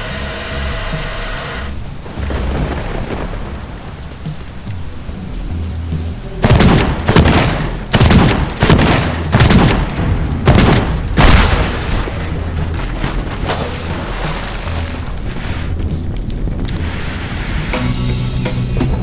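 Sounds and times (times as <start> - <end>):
rain hissing: 0.0 - 19.0
loud crackling thunder booms: 1.8 - 14.2.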